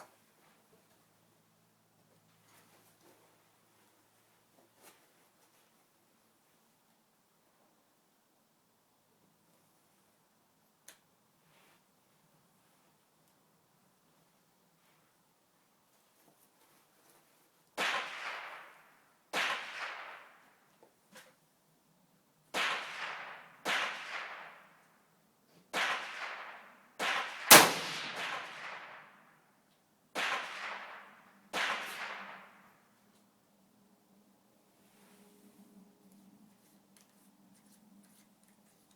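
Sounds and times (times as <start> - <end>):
rifle shots echoing: 17.8 - 20.4, 22.5 - 24.7, 25.7 - 29.3, 30.1 - 32.7.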